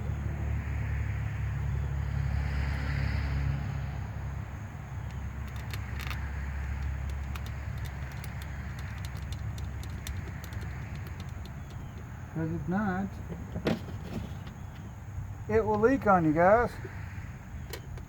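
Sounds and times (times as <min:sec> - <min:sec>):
faint light clicks: 0:05.0 - 0:12.1.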